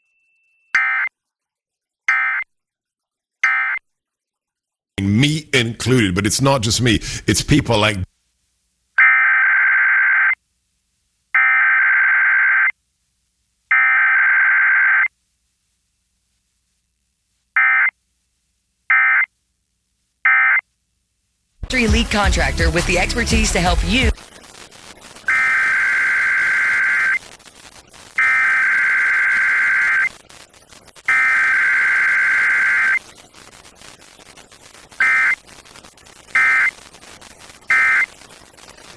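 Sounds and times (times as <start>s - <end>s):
buzzy warbling digital data tones: 21.8s - 38.9s.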